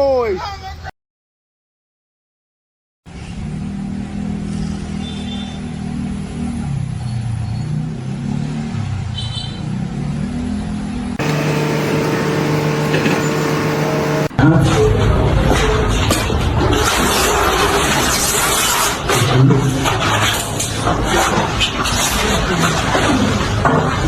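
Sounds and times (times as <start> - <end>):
steady engine with fixed pitch: 11.2 - 14.3
engine running with varying pitch: 11.2 - 14.4.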